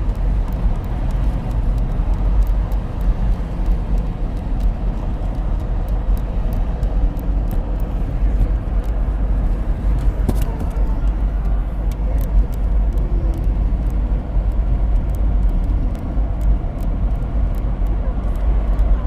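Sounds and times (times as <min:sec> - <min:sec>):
light irregular tapping: 0:00.0 - 0:19.0
loud steady low rumble: 0:00.0 - 0:19.0.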